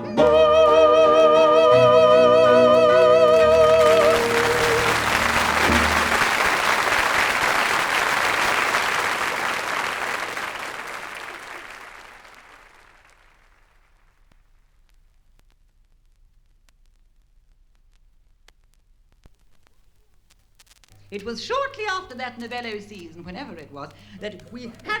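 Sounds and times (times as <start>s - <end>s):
person singing with vibrato: 0.0s - 5.5s
audience applauding: 0.2s - 13.8s
piano chord: 2.4s - 6.4s.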